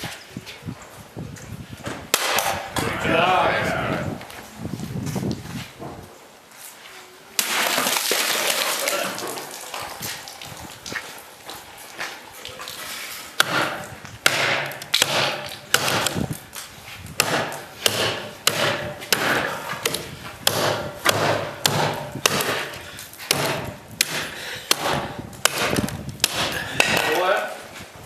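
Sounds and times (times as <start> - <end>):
knife chopping into wood: 13.4 - 16.2, 17.2 - 27.2.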